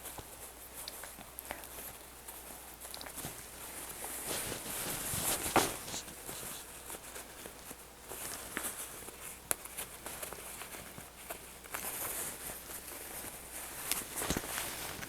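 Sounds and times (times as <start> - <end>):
fabric rustling: 3.2 - 7.4, 11.9 - 15.0.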